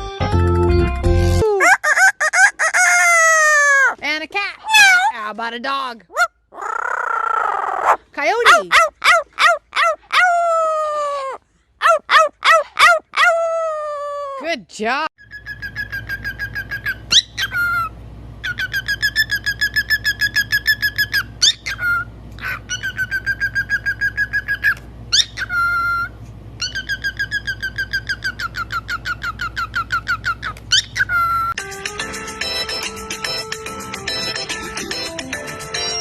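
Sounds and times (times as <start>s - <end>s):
parrot whistling rapid notes: 15.2s - 22.0s, 22.6s - 31.6s.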